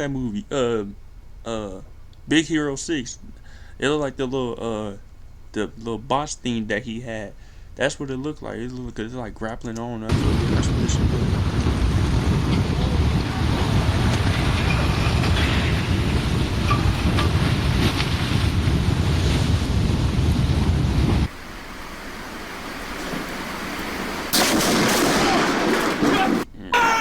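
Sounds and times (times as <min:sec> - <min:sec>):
mudslide rumbling roar: 0:10.1 - 0:27.0.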